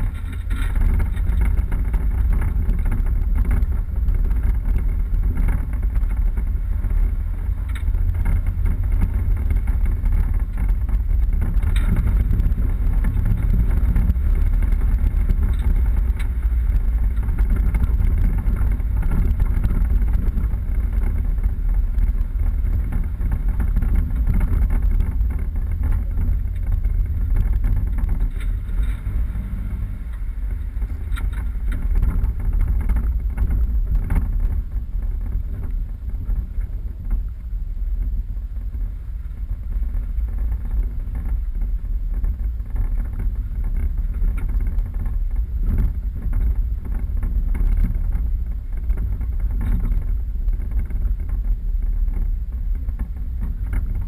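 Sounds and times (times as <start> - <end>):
light knocks and rattles: 0.0 - 37.4
engine and drivetrain rumble: 0.0 - 54.0.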